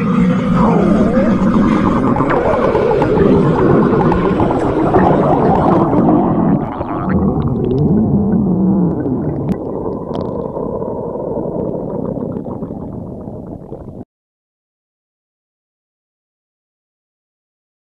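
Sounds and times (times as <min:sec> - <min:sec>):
stomach growling: 0:00.0 - 0:14.0.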